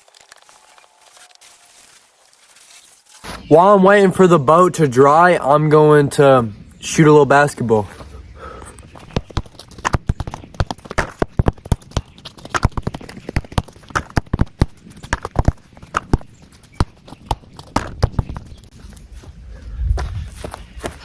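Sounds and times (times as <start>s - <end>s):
basketball bouncing: 8.9s - 18.5s.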